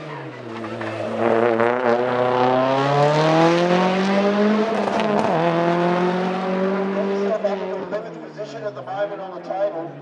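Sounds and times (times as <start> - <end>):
car engine accelerating hard: 0.0 - 7.9.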